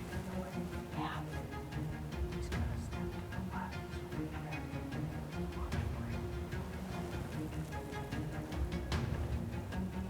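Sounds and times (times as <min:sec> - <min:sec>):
background music with strings: 0:00.0 - 0:10.0.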